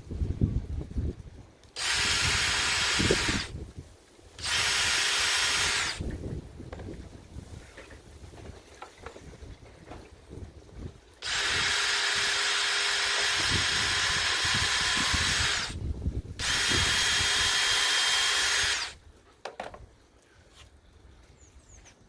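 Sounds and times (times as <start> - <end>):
power drill running: 1.8 - 3.5, 4.4 - 6.0, 11.2 - 15.8, 16.4 - 19.0.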